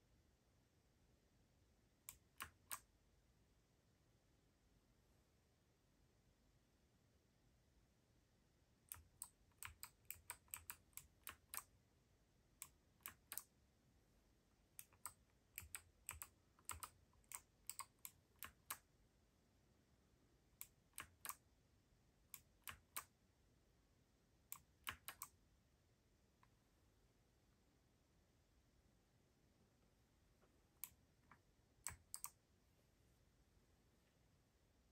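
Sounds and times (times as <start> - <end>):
mechanical keyboard key clicks: 8.9 - 11.7, 20.9 - 21.4.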